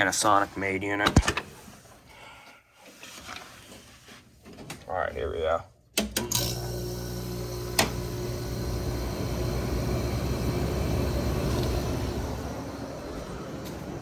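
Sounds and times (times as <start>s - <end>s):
air conditioner motor hum: 4.4s - 14.0s.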